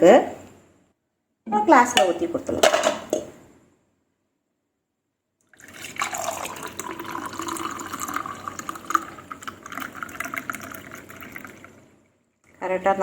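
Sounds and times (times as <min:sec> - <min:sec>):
juice gurgling into a glass: 0:05.5 - 0:12.6.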